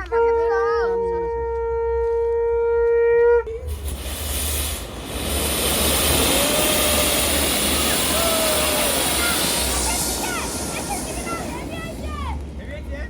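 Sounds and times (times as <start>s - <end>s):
conch shell blown: 0.1s - 3.6s
loud steady hiss: 3.6s - 13.0s.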